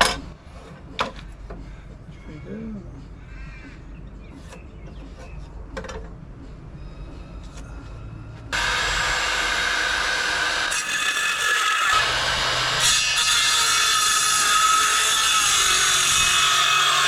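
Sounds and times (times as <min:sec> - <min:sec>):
power tool working wood: 0:08.6 - 0:17.0.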